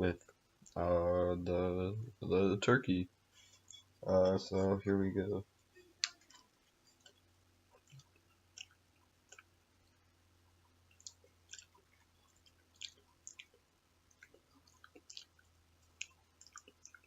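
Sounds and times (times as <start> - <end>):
faint low hum: 0.0 - 17.0
person chewing: 6.0 - 17.0.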